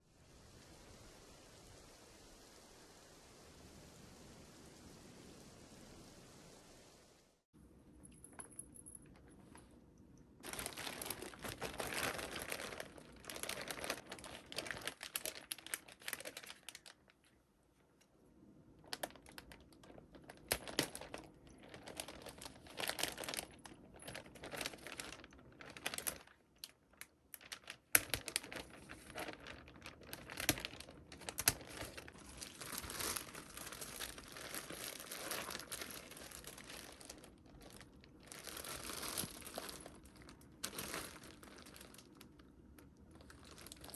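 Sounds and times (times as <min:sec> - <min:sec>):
packaging crinkling and rustling: 0:10.4 - 0:17.4, 0:18.8 - 0:43.9.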